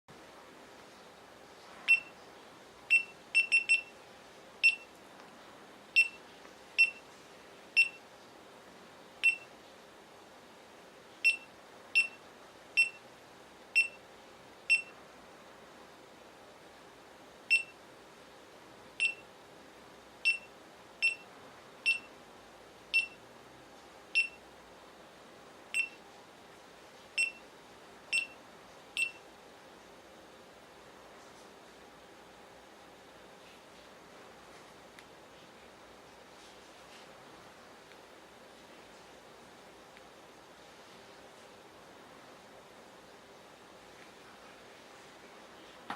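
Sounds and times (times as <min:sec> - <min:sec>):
short high-pitched camera beeps: 0:02.9 - 0:03.9.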